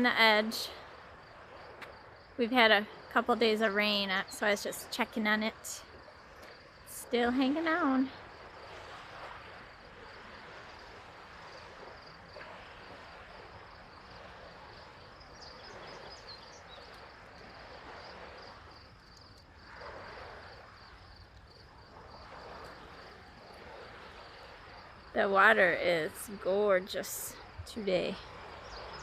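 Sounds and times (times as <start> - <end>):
insects chirping trill: 0.0 - 29.0
soft rushing wash: 0.0 - 29.0.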